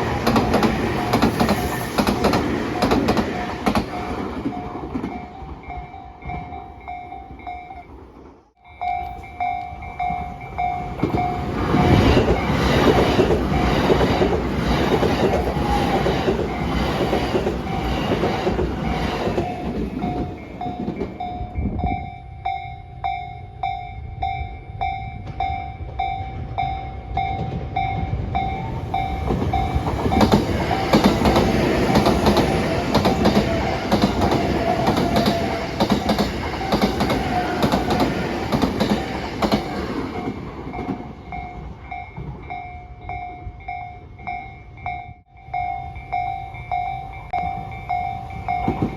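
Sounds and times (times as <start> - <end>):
train wheels clattering over rail joints: 0.0 - 5.2, 29.1 - 41.1
level crossing warning bell ringing: 8.6 - 12.8, 15.2 - 48.9.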